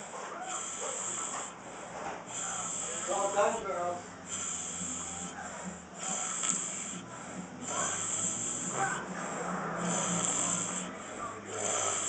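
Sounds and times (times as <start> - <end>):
man snoring: 0.4 - 1.6, 2.3 - 12.0.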